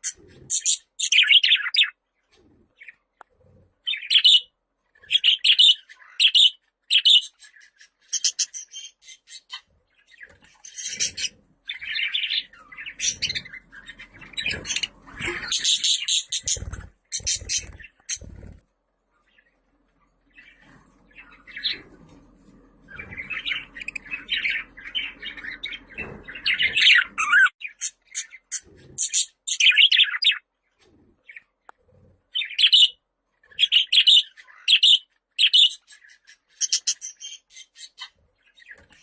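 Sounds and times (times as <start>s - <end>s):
budgerigar warbling and chirping: 0.0s - 2.0s, 5.1s - 9.6s, 10.2s - 18.5s, 22.9s - 30.4s, 32.4s - 33.0s, 33.6s - 38.1s.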